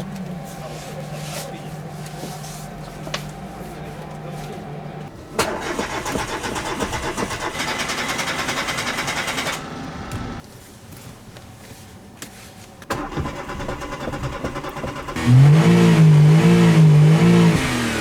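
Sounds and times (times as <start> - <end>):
starter motor cranking engine: 5.1 - 10.4, 12.9 - 18.0.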